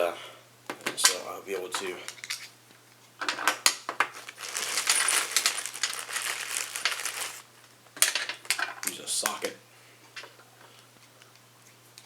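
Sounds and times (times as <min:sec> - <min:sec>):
metal tool pieces clinking and rattling: 0:04.2 - 0:07.2.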